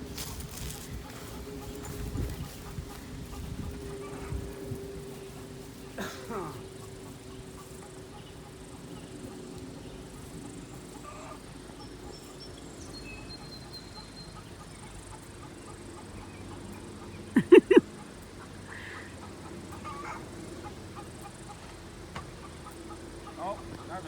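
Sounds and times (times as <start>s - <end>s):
soft poultry calls: 0.1s - 21.6s
poultry squawking: 0.2s - 12.4s, 17.4s - 17.8s, 18.7s - 21.4s.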